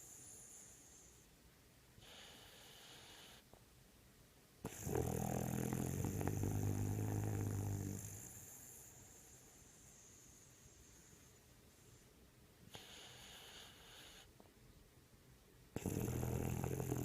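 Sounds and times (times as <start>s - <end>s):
dog snoring: 2.0s - 3.4s, 4.6s - 11.1s, 12.7s - 14.3s, 15.8s - 17.0s
faint breath: 8.3s - 14.4s.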